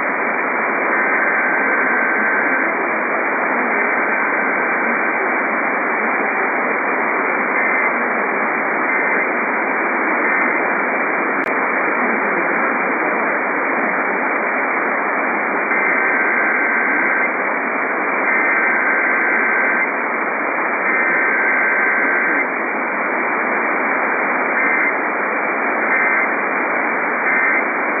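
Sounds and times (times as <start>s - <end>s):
radio hiss: 0.0s - 28.0s
digital data bursts: 0.9s - 2.7s, 20.8s - 22.5s, 24.5s - 25.0s, 25.8s - 26.3s, 27.2s - 28.0s.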